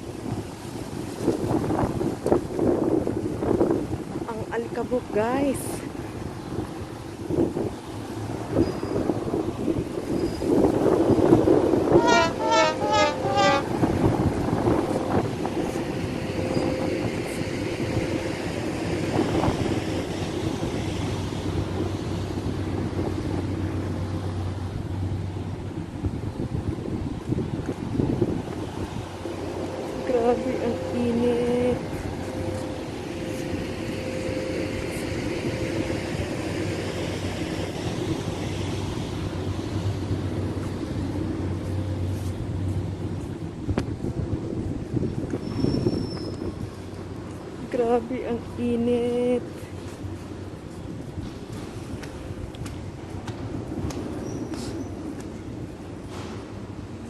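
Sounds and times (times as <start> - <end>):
wind buffeting microphone: 0.0 - 57.0
short horn toots: 11.9 - 13.8.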